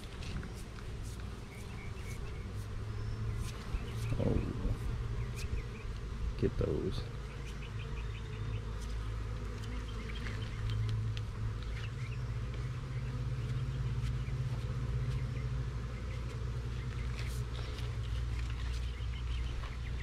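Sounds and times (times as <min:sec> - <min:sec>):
bees buzzing: 0:00.0 - 0:20.0.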